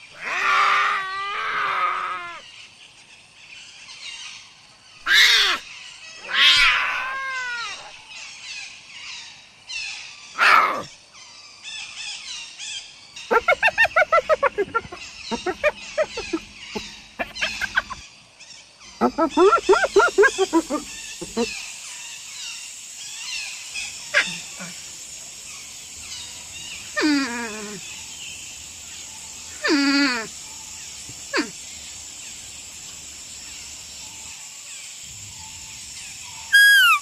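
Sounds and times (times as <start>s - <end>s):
animal calls: 0.0s - 2.4s, 5.0s - 8.1s, 10.3s - 11.0s, 13.2s - 18.1s, 18.9s - 21.8s, 23.8s - 24.9s, 36.3s - 37.0s.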